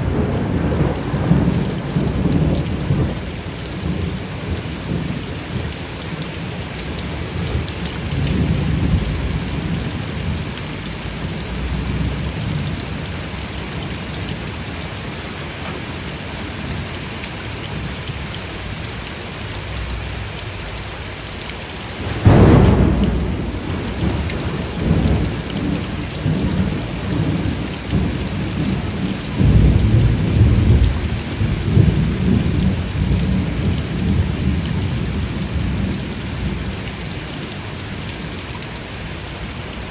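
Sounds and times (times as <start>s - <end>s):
loud thunderclap: 0.0s - 4.2s, 7.4s - 12.8s, 22.0s - 36.6s
rolling thunder: 0.0s - 5.2s, 7.3s - 13.9s, 21.9s - 36.6s
steady rain: 0.0s - 39.9s.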